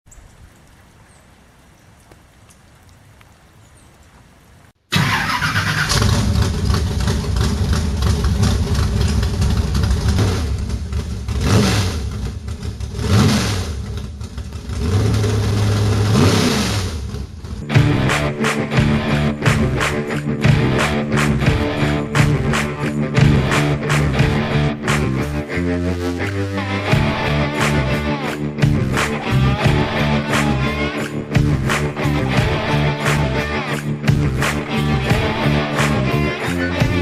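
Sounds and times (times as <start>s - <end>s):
race car engine revving: 5.0s - 37.0s
rock guitar music: 17.6s - 37.0s.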